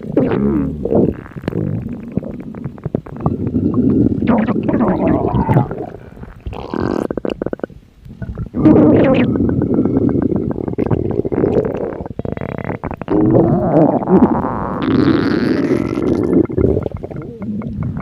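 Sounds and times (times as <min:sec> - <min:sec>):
stomach grumbling: 0:00.0 - 0:18.0.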